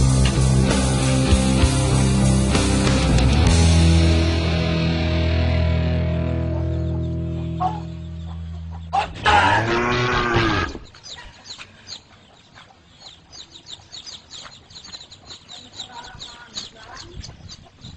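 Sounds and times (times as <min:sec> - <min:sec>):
birds chirping: 0:05.2 - 0:17.9
cow mooing: 0:09.0 - 0:10.8.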